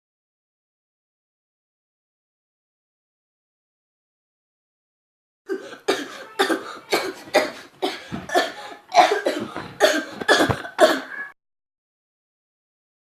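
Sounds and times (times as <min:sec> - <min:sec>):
person coughing: 0:05.5 - 0:11.3.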